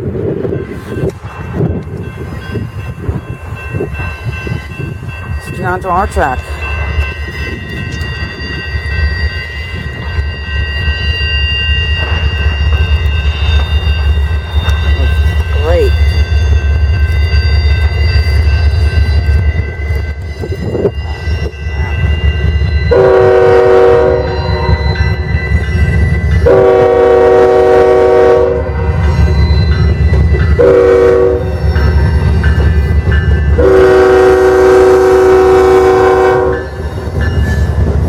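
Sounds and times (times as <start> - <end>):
train rumble: 0.0 - 38.0
locomotive air horn: 22.9 - 24.8, 26.5 - 28.7, 30.6 - 31.4, 33.6 - 36.6.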